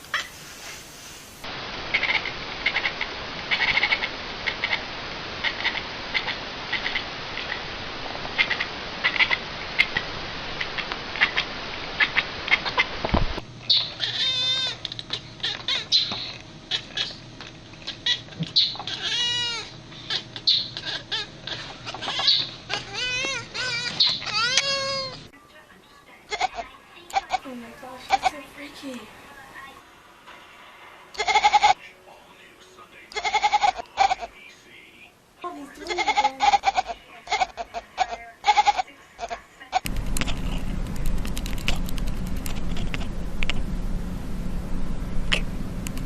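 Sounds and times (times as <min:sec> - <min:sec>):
steady hiss: 0:00.0 - 0:13.7, 0:27.4 - 0:36.1
cat trilling: 0:05.4 - 0:07.5, 0:13.7 - 0:17.2, 0:17.9 - 0:25.3, 0:31.2 - 0:31.8, 0:33.2 - 0:34.2
cat chirping: 0:13.6 - 0:17.2, 0:17.8 - 0:25.3.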